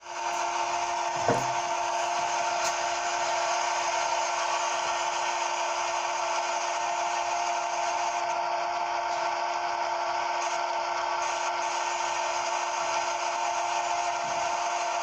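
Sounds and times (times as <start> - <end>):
cnc machine humming and hissing: 0.0 - 15.0
knock: 1.2 - 1.6.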